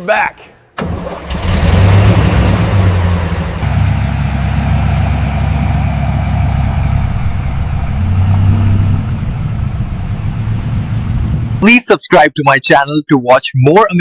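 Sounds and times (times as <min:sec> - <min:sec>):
car engine idling: 0:00.8 - 0:11.6.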